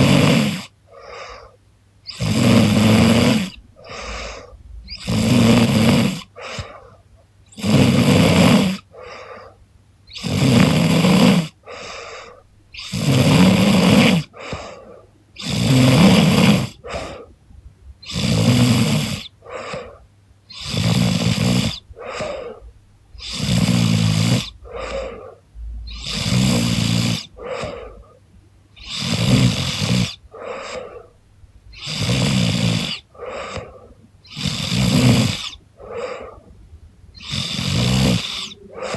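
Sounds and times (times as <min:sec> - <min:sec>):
woman snoring: 0:00.0 - 0:06.8, 0:07.5 - 0:09.5, 0:10.1 - 0:17.3, 0:18.0 - 0:22.6, 0:23.2 - 0:28.1, 0:28.8 - 0:31.1, 0:31.8 - 0:36.5, 0:37.2 - 0:38.9
soft breathing: 0:00.0 - 0:17.5, 0:18.9 - 0:38.9.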